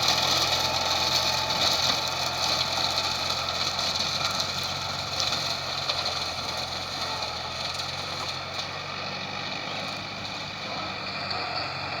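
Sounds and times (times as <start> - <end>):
rotary mower: 0.0 - 12.0
tractor diesel engine running: 0.0 - 12.0.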